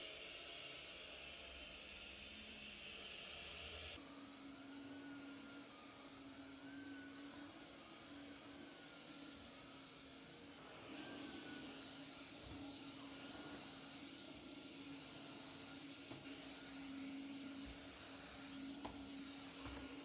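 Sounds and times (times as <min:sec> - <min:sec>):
appliance motor whirring: 0:00.0 - 0:20.0.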